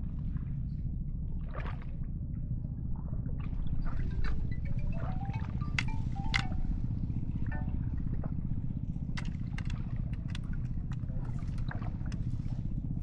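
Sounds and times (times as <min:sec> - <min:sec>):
small boat engine running: 0:00.0 - 0:13.0.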